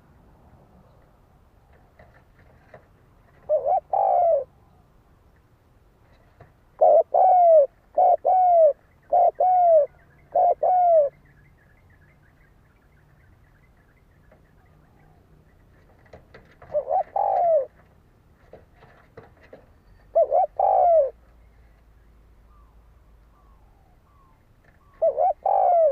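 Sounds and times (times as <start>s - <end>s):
dove cooing: 3.3s - 4.6s, 6.8s - 11.2s, 14.6s - 17.9s, 19.9s - 21.2s, 22.5s - 25.9s.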